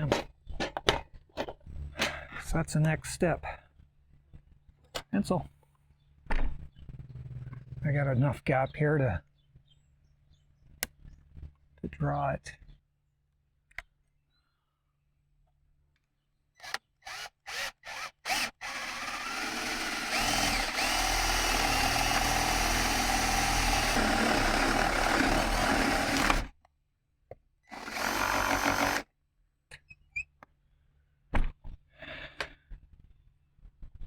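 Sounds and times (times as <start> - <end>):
power drill boring into wood: 16.6 - 26.5, 27.7 - 29.1.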